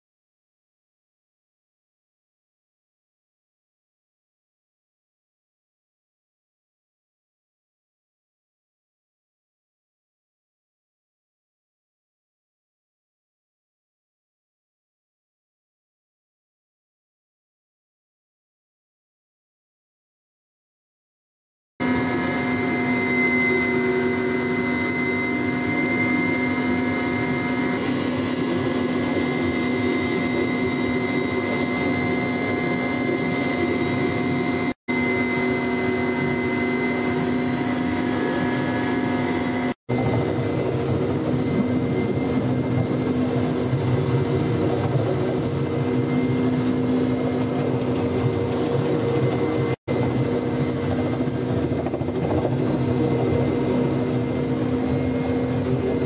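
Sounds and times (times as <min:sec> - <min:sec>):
aircraft engine and rotor whine: 0:21.8 - 0:56.0.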